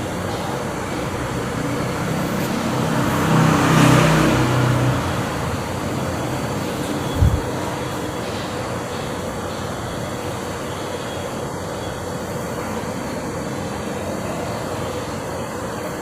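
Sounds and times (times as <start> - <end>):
traffic noise: 0.0 - 16.0
vehicle engine passing by: 0.8 - 8.4.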